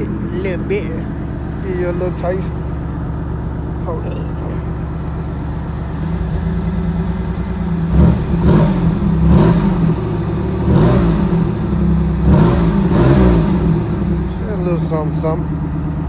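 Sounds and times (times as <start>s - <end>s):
car engine idling and revving: 0.0s - 16.0s.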